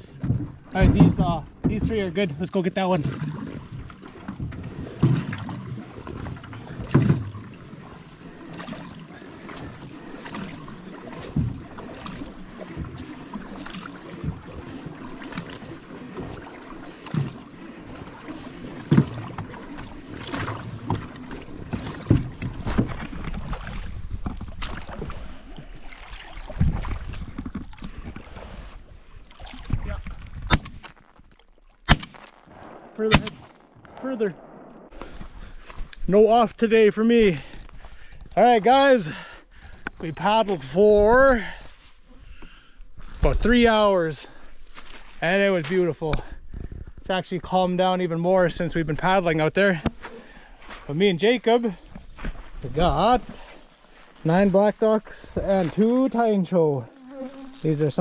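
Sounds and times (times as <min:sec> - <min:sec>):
paddle strokes in water: 0:00.0 - 0:58.0
paddle knocking against hull: 0:00.2 - 0:30.9, 0:49.8 - 0:50.9, 0:51.8 - 0:54.2.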